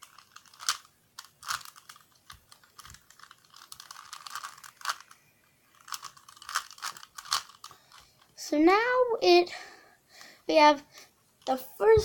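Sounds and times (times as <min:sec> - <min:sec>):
puzzle cube faces clicking: 0:00.0 - 0:08.2.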